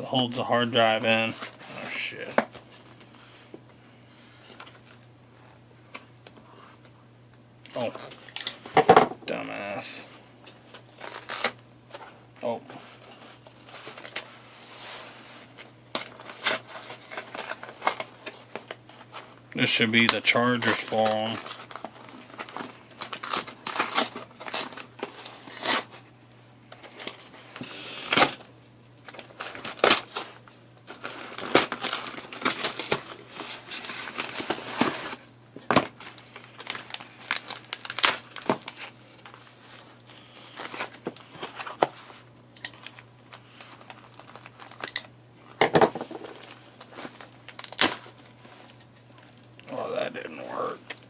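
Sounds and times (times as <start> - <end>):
packaging crinkling and tearing: 10.7 - 11.6, 13.4 - 26.1, 26.7 - 45.2, 46.0 - 51.0.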